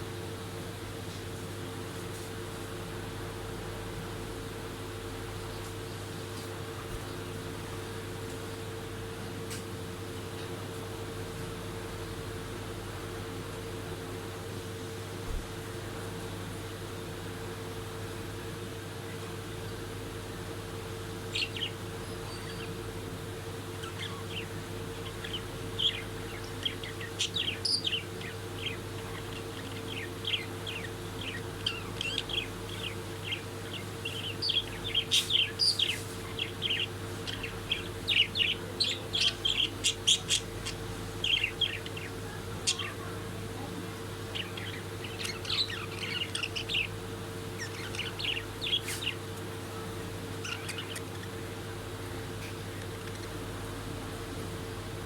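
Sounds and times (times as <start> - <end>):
steady low hum: 0.0 - 55.0
budgerigars chirping: 21.3 - 22.8, 23.7 - 43.1, 44.2 - 49.3, 50.3 - 51.5.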